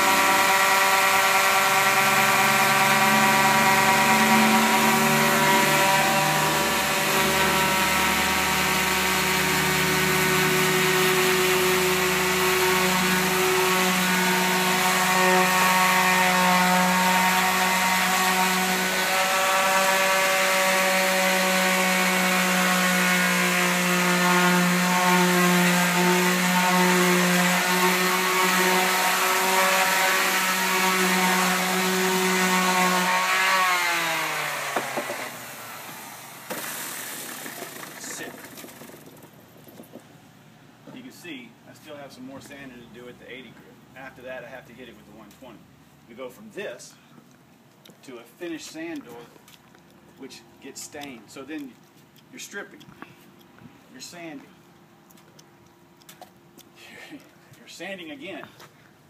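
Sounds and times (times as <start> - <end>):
electric power sander on wood: 0.0 - 39.3.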